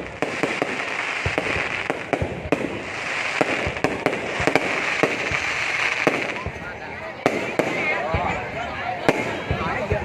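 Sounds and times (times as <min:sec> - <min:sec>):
fireworks shells bursting: 0:00.0 - 0:06.6
fireworks crackling: 0:00.0 - 0:10.0.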